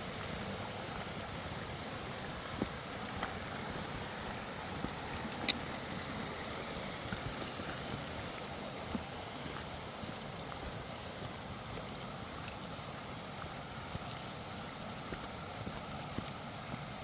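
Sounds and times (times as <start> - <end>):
creek water rushing: 0.0 - 17.0.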